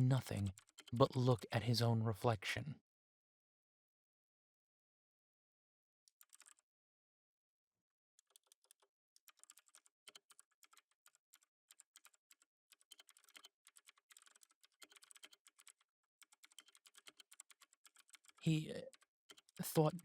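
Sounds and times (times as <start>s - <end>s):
typing on keyboard: 0.0s - 1.6s, 6.1s - 6.6s, 8.2s - 20.0s.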